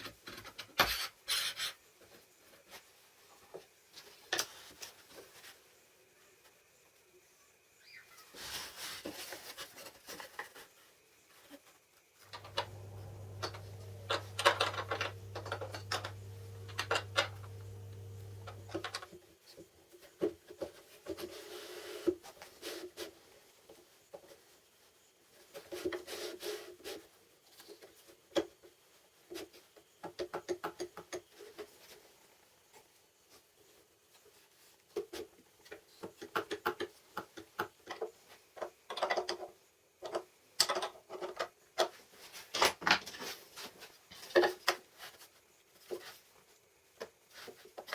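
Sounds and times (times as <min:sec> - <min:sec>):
low electric hum: 0:12.3 - 0:19.0
parts clicking and knocking: 0:12.3 - 0:19.1, 0:35.7 - 0:43.1.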